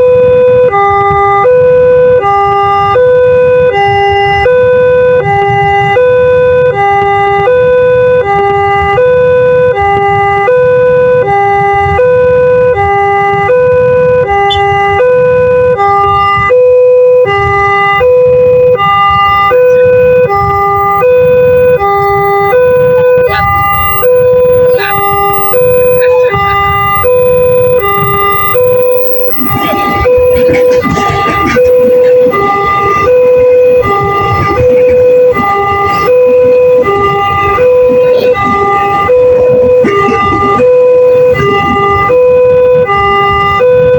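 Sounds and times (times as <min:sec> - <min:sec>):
two-tone warning siren: 0:00.0 - 0:43.9
low rumble: 0:18.1 - 0:43.9.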